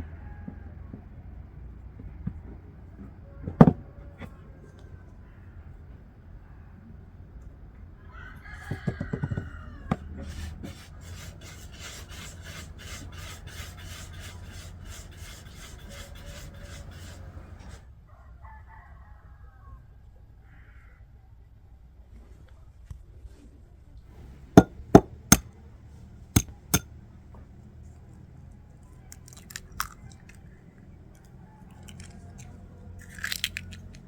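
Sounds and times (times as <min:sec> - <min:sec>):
rooster crowing: 0:08.0 - 0:10.3, 0:18.1 - 0:19.8
rhythmic scraping: 0:10.6 - 0:17.8.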